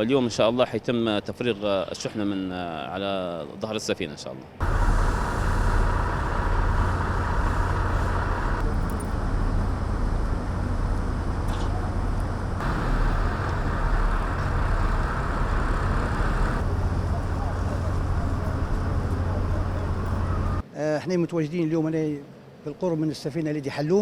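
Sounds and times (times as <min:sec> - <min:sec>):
broad rushing noise: 0:04.6 - 0:20.6
low engine rumble: 0:04.6 - 0:20.6.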